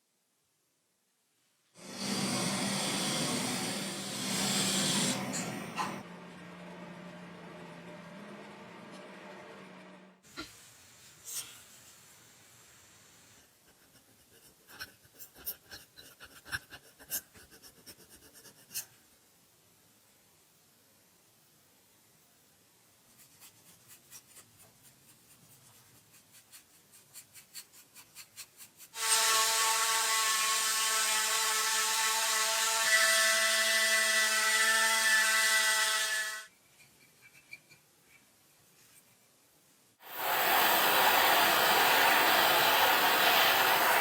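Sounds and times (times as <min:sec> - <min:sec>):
hiss: 0:01.8 - 0:06.0, 0:10.3 - 0:13.6, 0:26.6 - 0:31.0, 0:40.0 - 0:44.0.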